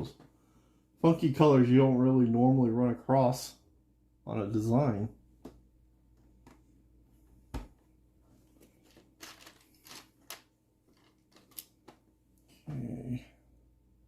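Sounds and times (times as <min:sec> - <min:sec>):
plastic bricks clicking and clattering: 0:08.8 - 0:11.7.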